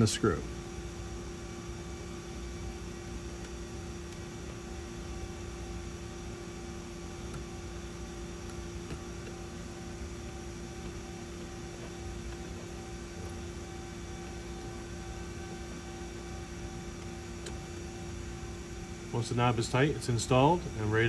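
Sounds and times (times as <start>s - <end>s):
electrical hum: 0.0s - 21.0s.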